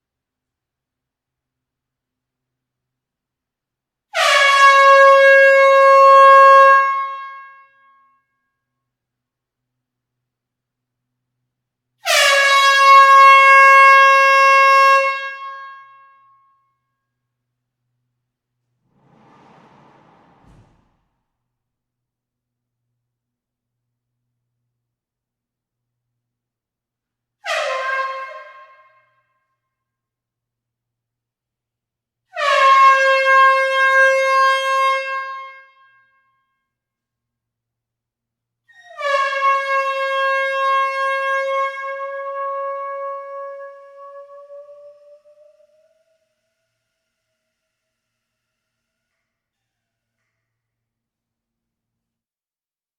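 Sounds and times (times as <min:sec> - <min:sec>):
air horn blast: 0:18.8 - 0:21.2.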